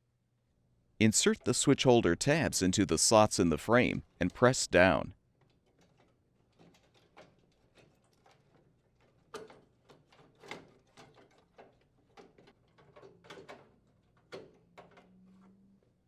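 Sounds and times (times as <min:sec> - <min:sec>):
plastic parts clicking: 0:05.4 - 0:15.6.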